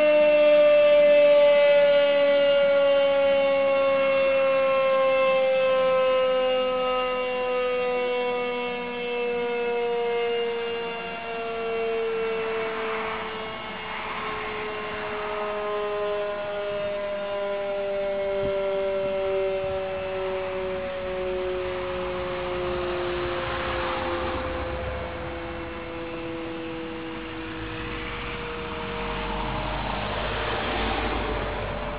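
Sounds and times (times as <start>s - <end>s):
higher siren tone: 0.0s - 31.9s
mechanical siren winding down: 0.0s - 31.9s
rushing noise: 22.6s - 31.9s.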